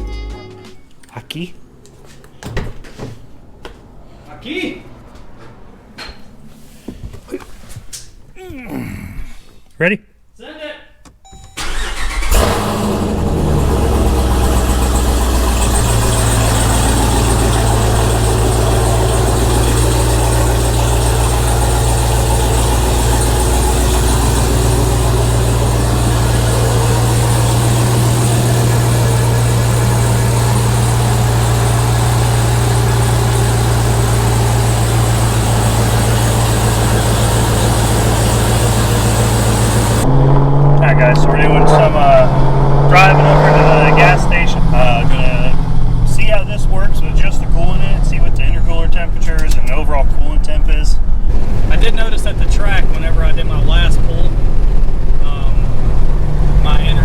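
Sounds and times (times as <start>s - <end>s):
car engine idling loudly: 11.6s - 40.1s, 40.8s - 57.0s.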